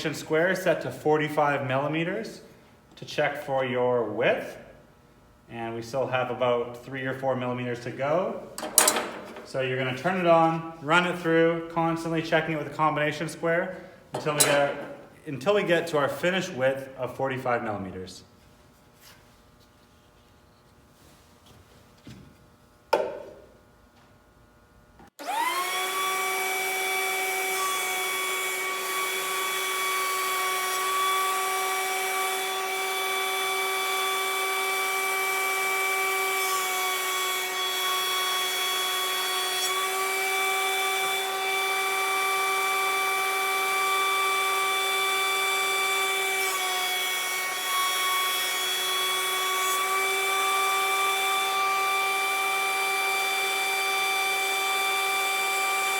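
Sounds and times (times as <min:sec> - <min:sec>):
thickness planer whining: 0:07.8 - 0:16.6, 0:25.2 - 0:55.9.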